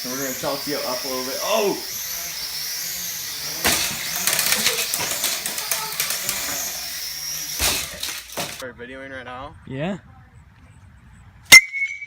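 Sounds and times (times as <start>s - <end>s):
high electric motor whine: 0.0s - 8.6s
toy car clattering as it tumbles: 0.0s - 8.6s
toy car hitting pavement: 0.0s - 8.6s.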